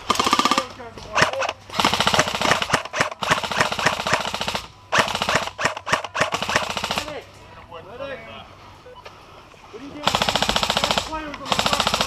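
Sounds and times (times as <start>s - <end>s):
airsoft guns firing full-auto: 0.0s - 7.2s, 10.0s - 12.0s.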